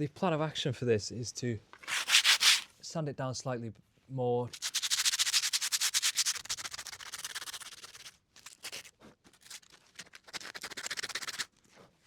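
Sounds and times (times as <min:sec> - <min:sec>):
sandpaper scratching on steel: 0:01.8 - 0:02.7, 0:04.6 - 0:11.5.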